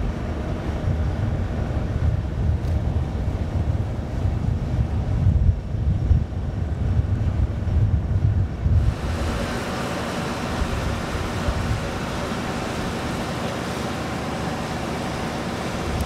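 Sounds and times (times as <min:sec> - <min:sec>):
wind buffeting microphone: 0:00.0 - 0:16.0
jet engine rushing: 0:08.6 - 0:16.0.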